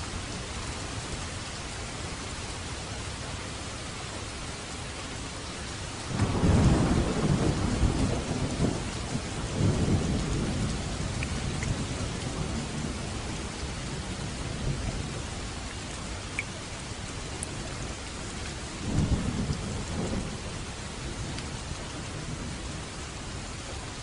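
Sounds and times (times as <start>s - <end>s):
steady rainfall: 0.0s - 24.0s
thunder rumbling: 6.1s - 15.6s, 17.4s - 23.5s.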